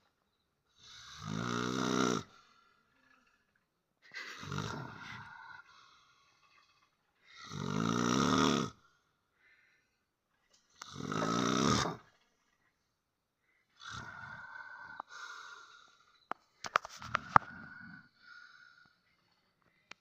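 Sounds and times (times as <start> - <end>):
person snoring loudly: 0.8 - 2.6, 4.3 - 5.7, 7.3 - 8.8, 10.8 - 12.1, 13.8 - 16.0, 17.1 - 18.9.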